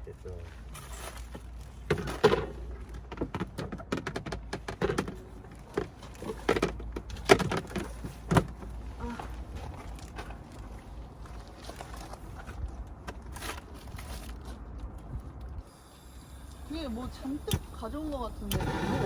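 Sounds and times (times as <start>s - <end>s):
objects clattering: 0.7s - 14.7s.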